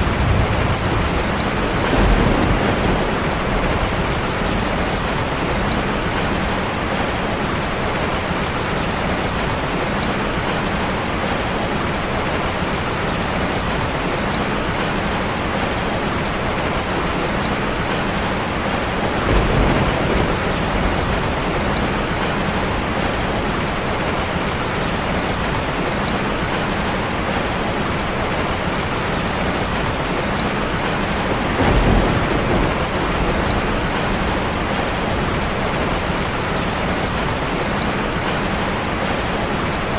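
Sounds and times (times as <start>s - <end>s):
low rumbles of thunder: 0.0s - 7.3s, 19.1s - 23.6s, 29.7s - 38.3s
steady rain falling: 0.0s - 39.9s.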